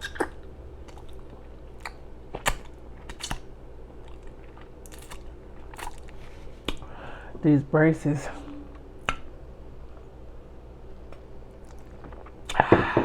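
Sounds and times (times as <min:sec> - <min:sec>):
wet smacking and chewing: 0:00.0 - 0:06.9, 0:11.0 - 0:12.7.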